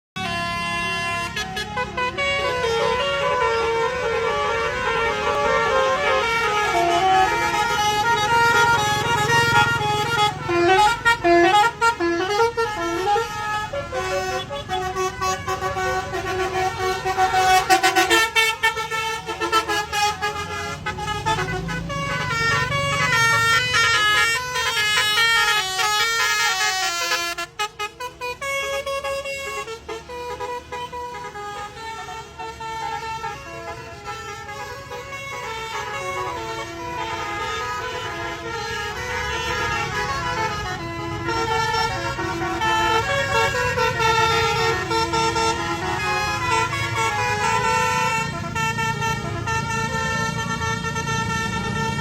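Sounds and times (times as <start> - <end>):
bus engine rumbling: 0.2 - 52.0
bus melodic horn playing a tune: 0.2 - 52.0.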